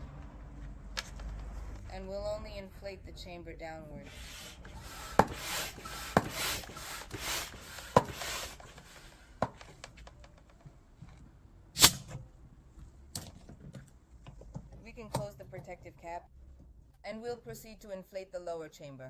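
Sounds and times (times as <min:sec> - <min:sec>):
air pump rushing air: 0:04.0 - 0:10.5, 0:11.8 - 0:12.3
sharp knocks: 0:04.3 - 0:08.8.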